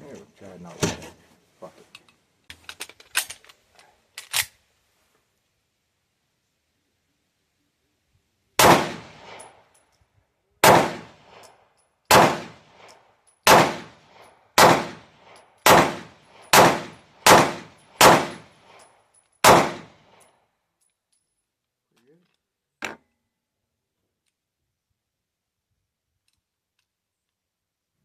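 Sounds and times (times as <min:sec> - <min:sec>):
gunshot echo: 0:08.6 - 0:09.5, 0:10.6 - 0:11.4, 0:12.1 - 0:12.8, 0:13.5 - 0:18.5, 0:19.4 - 0:20.0
gunshots: 0:08.6 - 0:09.5, 0:10.6 - 0:11.4, 0:12.1 - 0:12.8, 0:13.5 - 0:18.5, 0:19.4 - 0:20.0.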